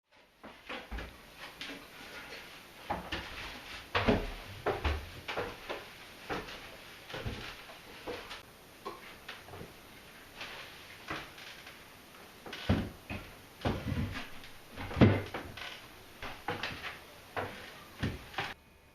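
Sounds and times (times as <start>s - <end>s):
knocks and clunks: 12.4s - 18.6s.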